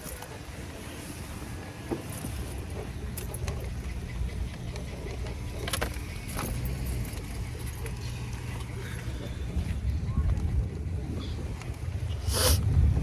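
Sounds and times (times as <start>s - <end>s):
car road rumble: 0.0s - 13.0s
light clicks and rattles: 1.6s - 10.8s.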